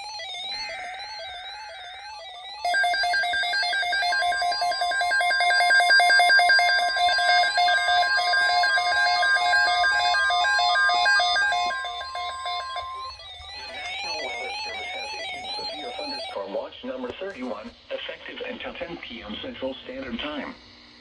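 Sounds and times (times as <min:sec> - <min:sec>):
electronic chirping and warbling: 0:00.4 - 0:16.4
piercing alert tone: 0:02.7 - 0:13.3.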